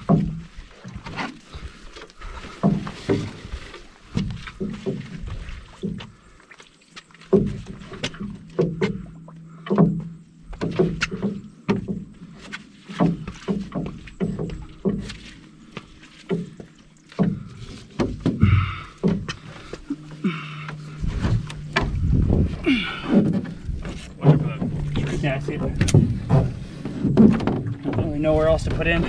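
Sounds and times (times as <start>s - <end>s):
paddle splashing with knock: 0.0s - 6.2s, 7.2s - 29.0s.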